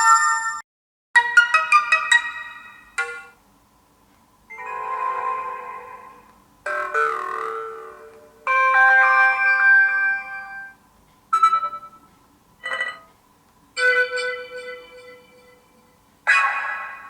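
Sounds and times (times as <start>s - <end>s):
ringing chime: 13.8s - 15.9s.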